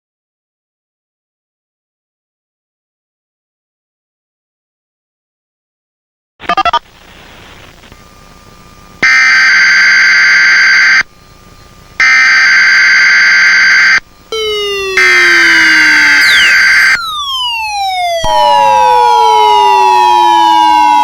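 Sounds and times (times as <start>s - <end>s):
harsh buzzing alarm: 9.0s - 21.0s
falling siren-like sweep: 12.3s - 21.0s.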